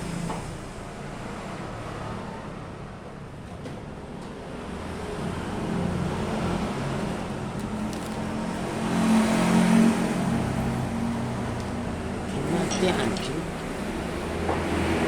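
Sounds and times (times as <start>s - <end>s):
vehicle engine passing by: 4.6s - 15.0s.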